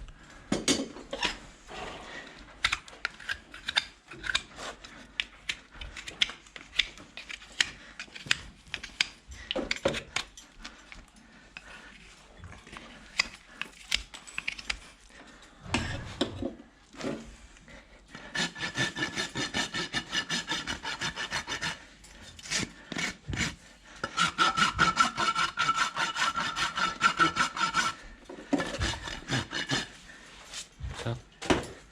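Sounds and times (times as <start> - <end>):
rasp filing a hoof: 18.1 - 30.6.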